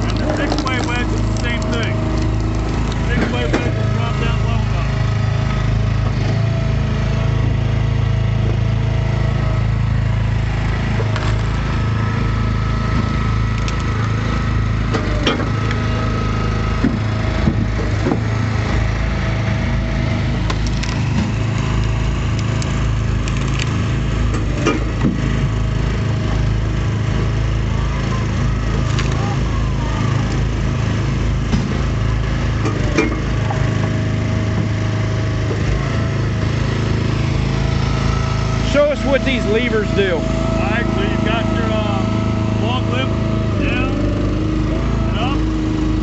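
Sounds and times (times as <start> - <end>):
wood cracking and splintering: 0.0 - 4.0, 20.0 - 26.6, 28.4 - 29.4
log splitter engine running: 0.0 - 46.0.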